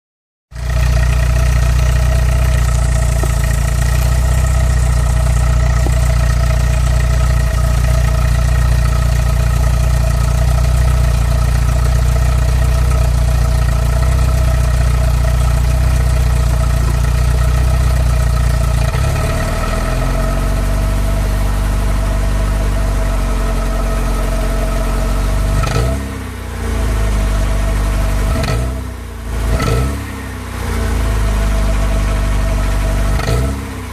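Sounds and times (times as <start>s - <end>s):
car engine fast idle: 0.6s - 33.9s.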